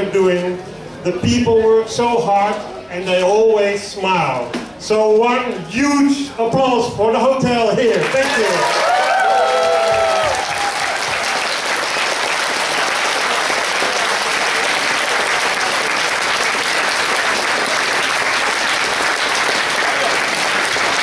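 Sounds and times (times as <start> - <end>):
audience applauding: 7.9 - 21.0.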